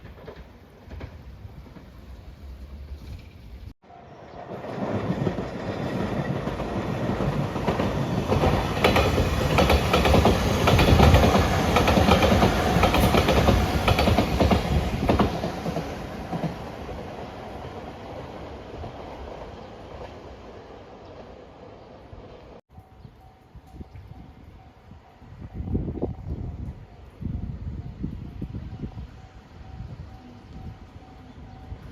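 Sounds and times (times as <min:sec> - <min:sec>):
wheels clicking over rail joints: 0:00.0 - 0:03.7, 0:04.6 - 0:17.2
electric train passing: 0:00.0 - 0:31.9.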